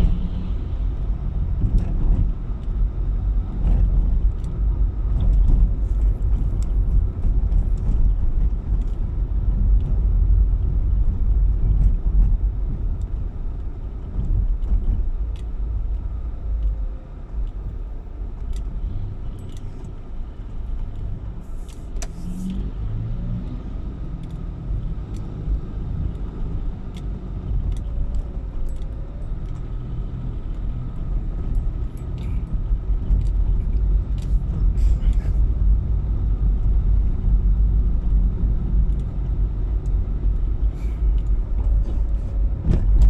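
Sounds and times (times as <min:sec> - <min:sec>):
car road and engine rumble: 0:00.0 - 0:43.0.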